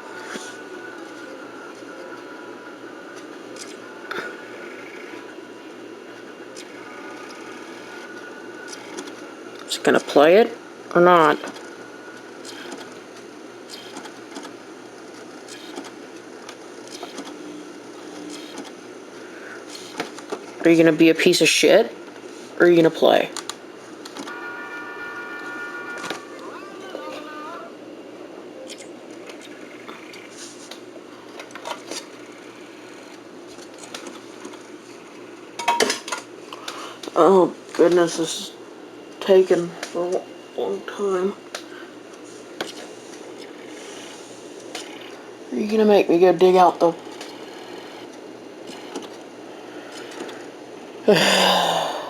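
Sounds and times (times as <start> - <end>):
disc drive whirring: 0.0 - 52.0
disc drive clicks: 11.4 - 18.8, 19.6 - 20.6, 23.3 - 24.4, 33.0 - 34.7, 47.0 - 49.3, 49.9 - 50.6.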